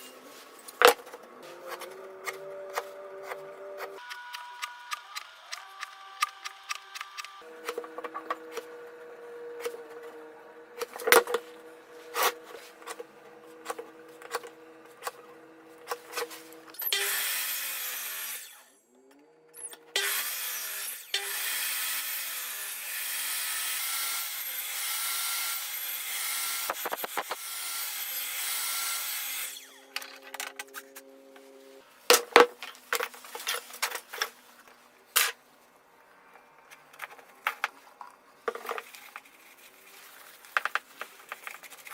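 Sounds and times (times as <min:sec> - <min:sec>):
loud sawing of wood: 0:15.9 - 0:18.7, 0:20.0 - 0:30.0.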